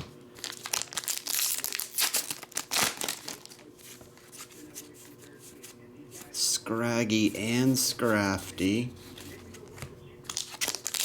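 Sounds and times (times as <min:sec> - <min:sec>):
foil wrapper crinkling and tearing: 0:00.4 - 0:03.7, 0:10.3 - 0:11.0.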